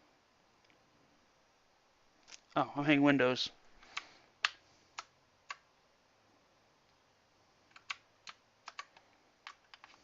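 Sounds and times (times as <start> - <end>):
mechanical keyboard clacks: 7.7 - 9.9.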